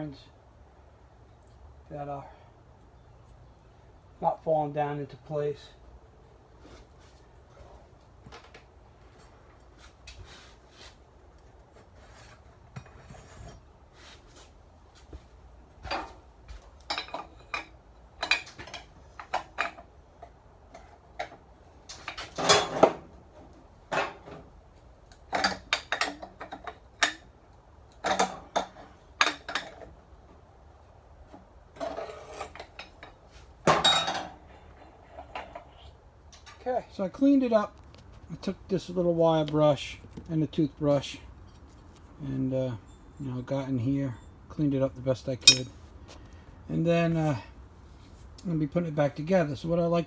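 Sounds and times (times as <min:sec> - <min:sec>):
loud metal clanks: 0:45.4 - 0:45.7.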